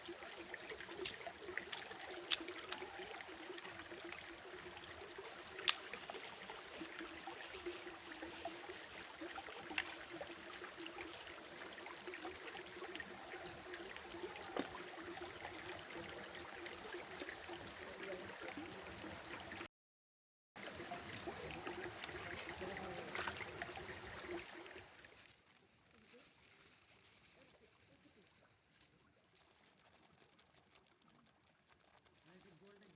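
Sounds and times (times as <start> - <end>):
stream water gurgling: 0.0 - 19.7, 20.6 - 27.0.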